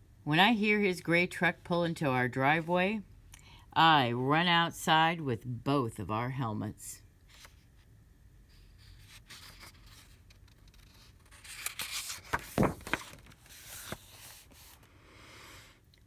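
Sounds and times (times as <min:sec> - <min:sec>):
paper pages rustling: 0:08.8 - 0:14.9.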